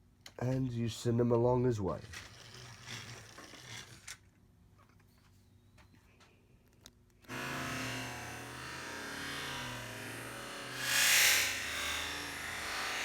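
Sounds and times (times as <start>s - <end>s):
toy train motor whirring: 1.8s - 4.4s, 7.3s - 13.0s.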